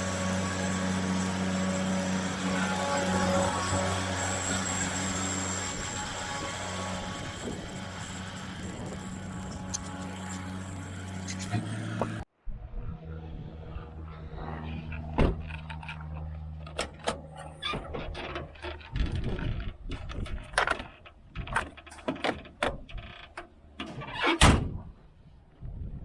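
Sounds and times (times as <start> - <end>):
vehicle engine idling: 0.0 - 12.3.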